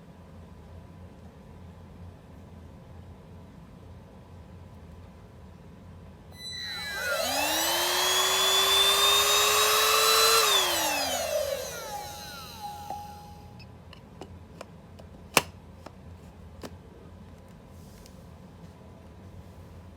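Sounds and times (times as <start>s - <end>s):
handheld vacuum motor whining: 6.4s - 13.6s.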